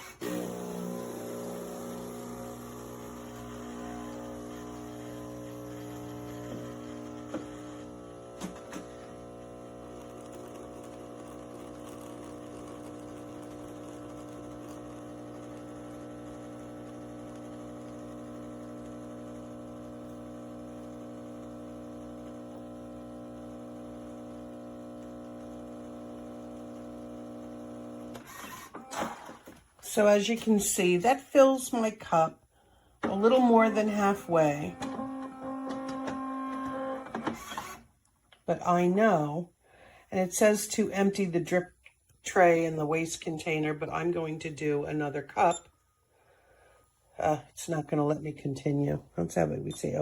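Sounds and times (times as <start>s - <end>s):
coffee machine pump humming: 0.0s - 30.9s, 33.0s - 37.8s.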